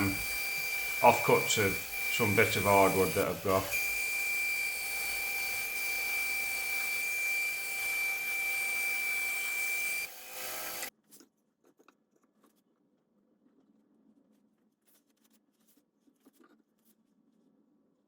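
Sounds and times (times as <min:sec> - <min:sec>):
power saw whining: 0:00.0 - 0:10.9.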